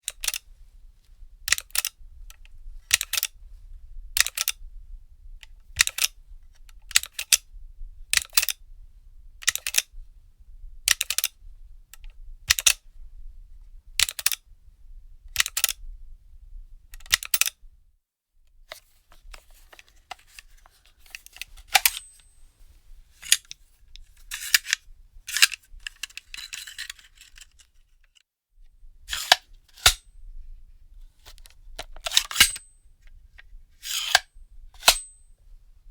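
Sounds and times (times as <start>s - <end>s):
firearm magazine metallic clicks: 0.1s - 0.4s, 2.9s - 3.3s, 4.2s - 4.6s, 15.4s - 15.8s, 17.0s - 17.6s, 21.1s - 22.4s, 23.2s - 23.6s, 24.3s - 27.6s, 29.1s - 30.1s, 31.3s - 32.8s, 33.8s - 35.3s
rattling scrape: 24.2s - 27.6s.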